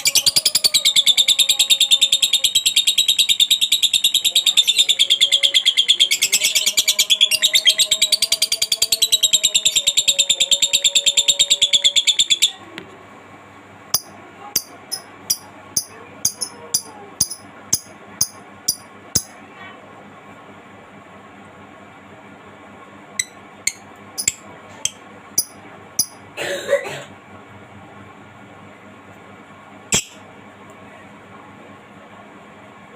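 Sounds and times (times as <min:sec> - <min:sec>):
bird chattering trill: 0:14.0 - 0:19.3, 0:23.2 - 0:24.4, 0:25.4 - 0:26.2
sharp high bird chirps: 0:14.0 - 0:19.3.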